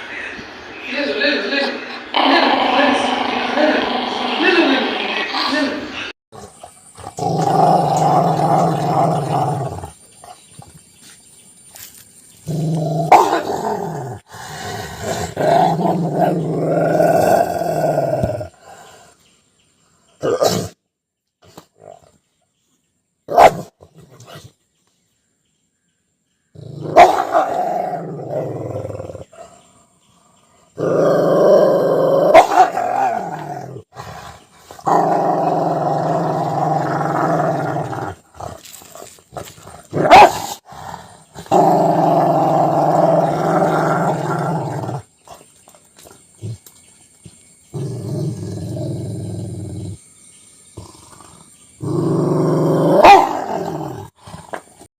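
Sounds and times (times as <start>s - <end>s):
dog growling: 6.4s - 10.5s, 12.4s - 18.8s, 26.6s - 29.7s, 30.7s - 46.7s, 47.7s - 50.0s, 50.7s - 54.9s
dog barking: 13.1s - 13.5s, 23.3s - 23.7s, 26.9s - 27.6s, 32.3s - 32.8s, 40.0s - 40.6s, 53.0s - 53.4s.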